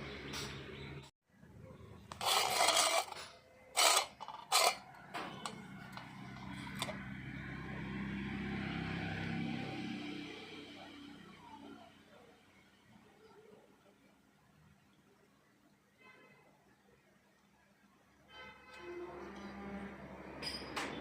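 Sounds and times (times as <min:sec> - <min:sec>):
loud scraping strokes: 0:02.2 - 0:04.8.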